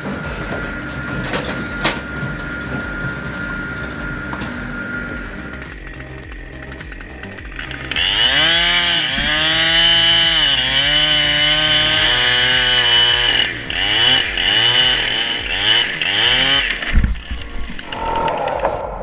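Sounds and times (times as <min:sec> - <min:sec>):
chainsaw cutting wood: 0:06.9 - 0:17.3.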